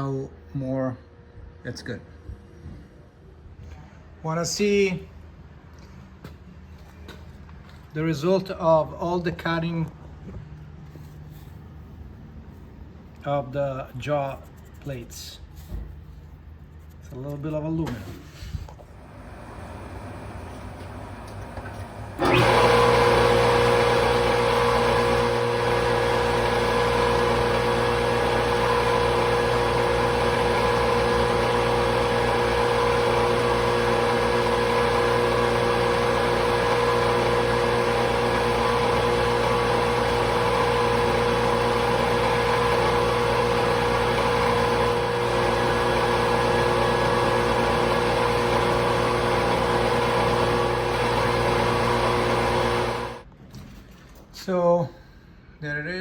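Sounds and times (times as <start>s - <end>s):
electric machine humming and whining: 18.8s - 53.2s.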